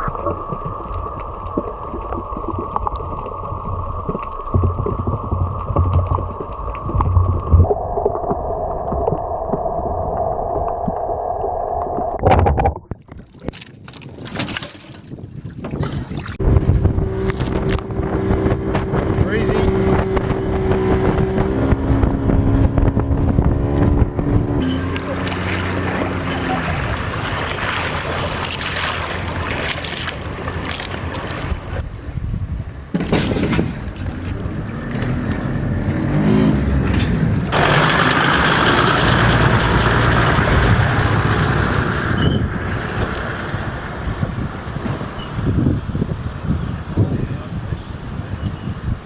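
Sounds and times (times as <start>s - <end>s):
wind and water rushing: 0.0s - 32.8s, 36.1s - 49.0s
motorboat engine drone: 16.4s - 31.1s, 34.2s - 44.8s.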